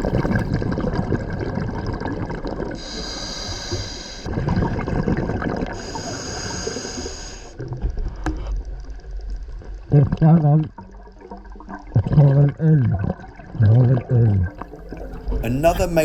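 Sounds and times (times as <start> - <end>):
diver breathing through regulator: 2.8 - 4.3, 5.8 - 7.6.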